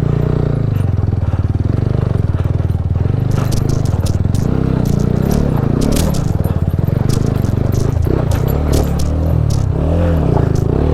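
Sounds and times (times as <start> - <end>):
motorcycle engine running: 0.7 - 10.9
light clicks and rattles: 3.2 - 10.9.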